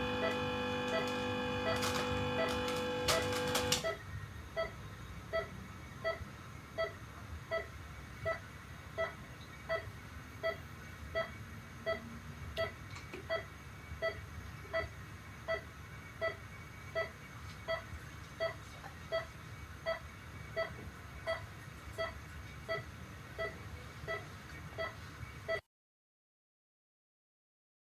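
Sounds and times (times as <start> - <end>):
low steady hum: 0.0 - 3.9
heart-rate monitor beeping: 0.0 - 4.0, 4.6 - 6.2, 9.0 - 12.0, 15.5 - 20.0, 20.6 - 21.4.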